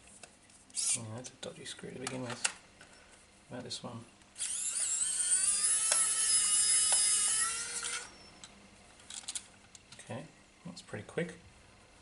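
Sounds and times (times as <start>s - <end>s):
electric screwdriver motor whine: 4.4s - 8.3s.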